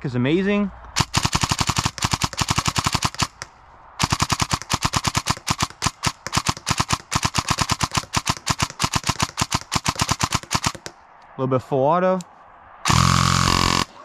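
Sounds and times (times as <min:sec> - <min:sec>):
airsoft rifle firing rapid shots: 0:01.0 - 0:11.0, 0:12.9 - 0:14.0.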